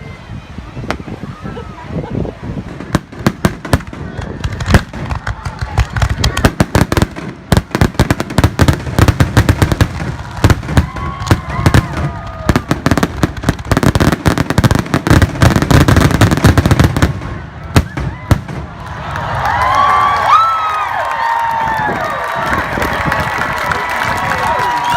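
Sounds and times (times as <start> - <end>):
fireworks bangs and crackles: 0.6 - 19.9.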